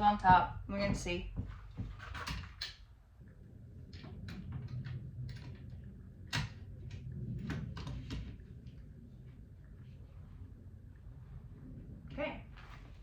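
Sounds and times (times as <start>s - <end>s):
lock parts clicking against metal door: 2.0s - 2.9s.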